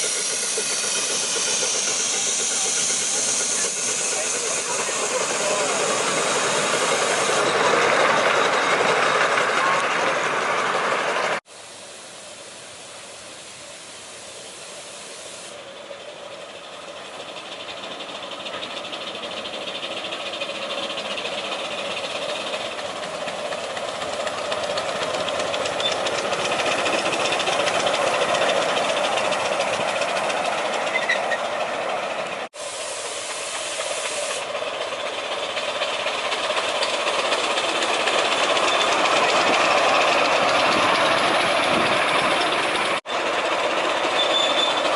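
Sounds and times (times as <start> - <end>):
miniature train running: 0.0 - 11.4, 12.3 - 44.9
steady hiss: 11.5 - 16.3, 32.6 - 34.6.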